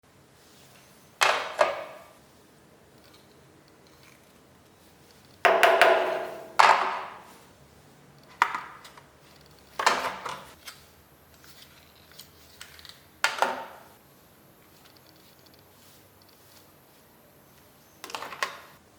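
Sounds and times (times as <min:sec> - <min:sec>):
sharp ringing knocks: 0:05.5 - 0:07.2.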